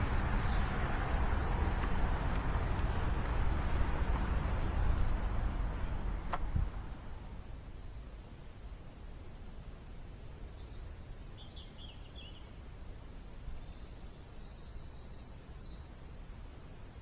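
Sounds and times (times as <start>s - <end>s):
songbird chirping: 0.0s - 7.3s
low background rumble: 0.0s - 7.5s.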